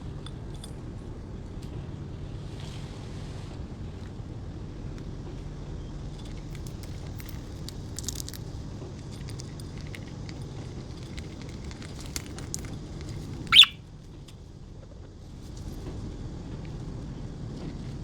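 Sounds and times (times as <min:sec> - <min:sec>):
low background hum: 0:00.0 - 0:18.0
birds cracking seed: 0:06.2 - 0:13.8.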